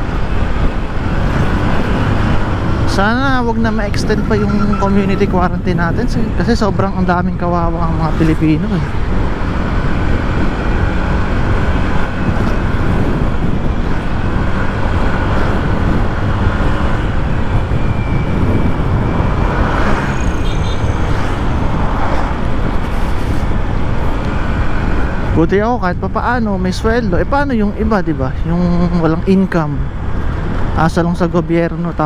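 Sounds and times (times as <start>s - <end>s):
motor scooter running: 0.0s - 6.4s, 7.9s - 25.4s
road traffic: 0.0s - 32.0s
wind rumble on microphone: 0.0s - 32.0s.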